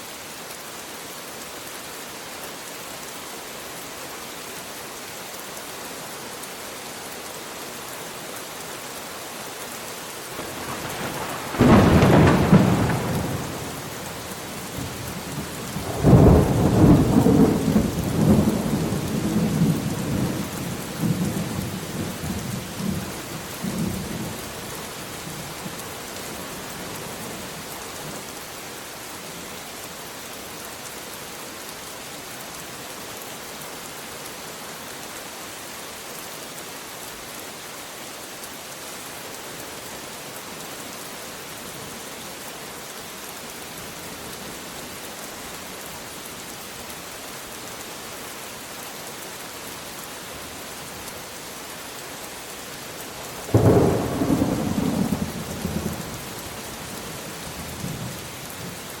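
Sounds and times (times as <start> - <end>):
heavy rain hissing: 0.0 - 59.0
thunder clap rolling: 10.8 - 13.6.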